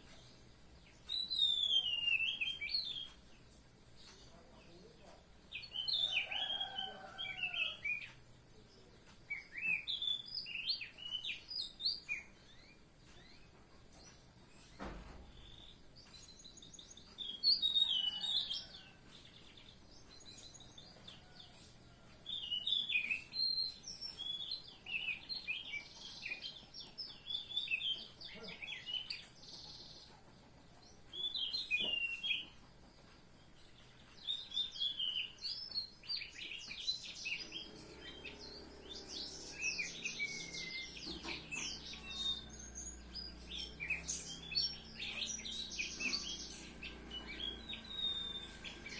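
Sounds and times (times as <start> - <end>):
thrush singing chirping phrases: 37.2 - 48.9.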